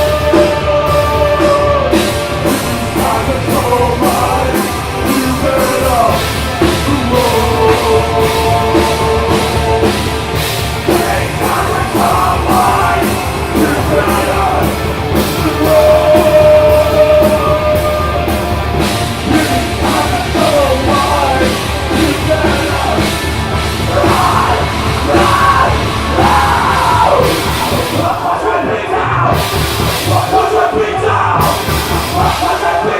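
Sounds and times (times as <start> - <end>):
distorted guitar: 0.0 - 32.9
live rock band playing: 0.0 - 32.9
steady drumbeat: 0.0 - 32.9.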